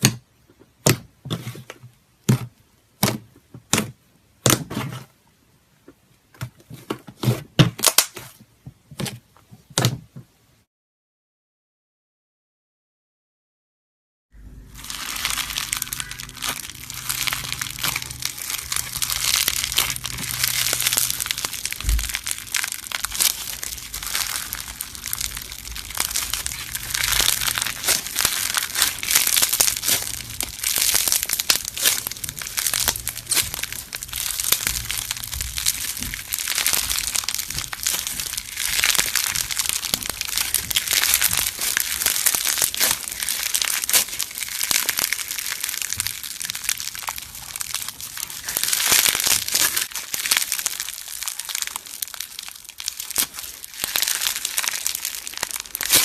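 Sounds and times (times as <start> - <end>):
slime squeezed by hand crackling: 14.7 - 56.0.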